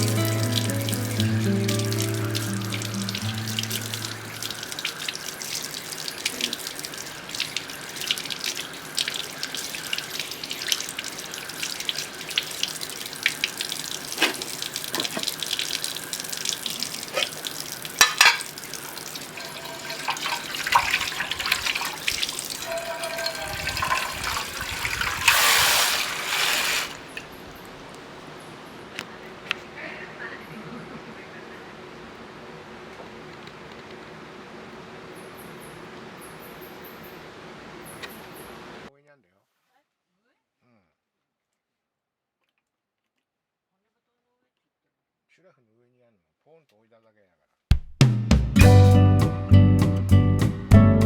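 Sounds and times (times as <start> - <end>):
running water splashing: 0.0 - 27.8
rush of water: 0.0 - 27.8.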